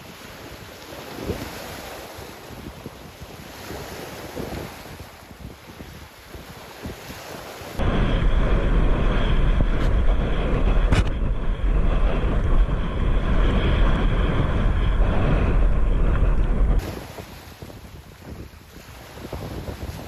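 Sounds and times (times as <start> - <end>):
rushing water: 0.0 - 7.8
wind buffeting microphone: 0.0 - 20.0.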